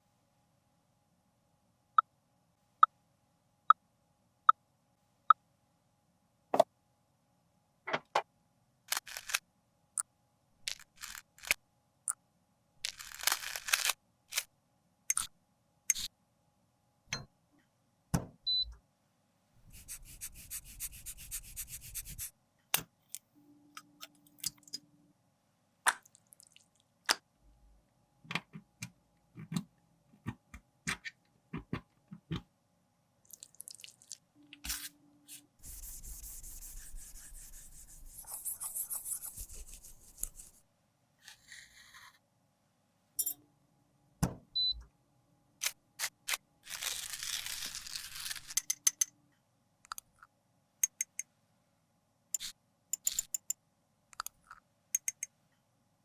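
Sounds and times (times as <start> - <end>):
ticks: 50.8 - 51.2, 55.0 - 55.3.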